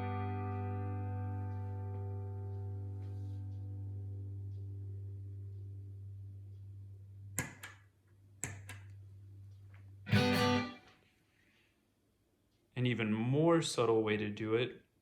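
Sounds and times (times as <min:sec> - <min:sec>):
clean electric guitar notes: 0:00.0 - 0:05.5, 0:10.1 - 0:10.9.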